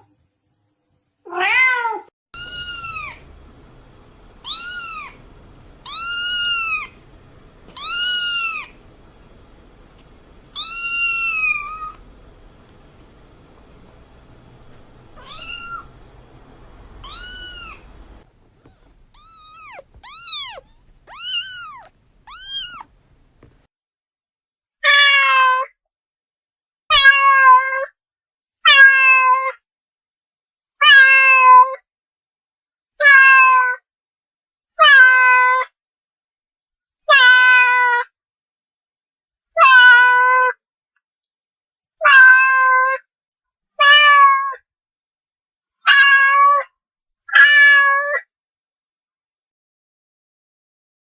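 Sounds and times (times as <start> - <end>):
soft high cat mews: 1.3 - 3.2, 15.2 - 15.9, 16.9 - 17.9, 18.6 - 22.9
cat meowing: 1.3 - 3.3, 4.4 - 5.2, 5.8 - 7.0, 7.7 - 8.8, 10.5 - 12.1, 14.7 - 16.1, 16.7 - 23.6, 33.0 - 33.7, 42.0 - 43.0, 43.8 - 44.6, 45.9 - 46.7, 47.3 - 48.2.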